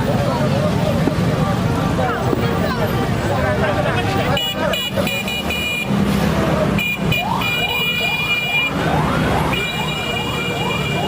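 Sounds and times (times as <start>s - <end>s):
siren-like wail: 7.2s - 11.0s.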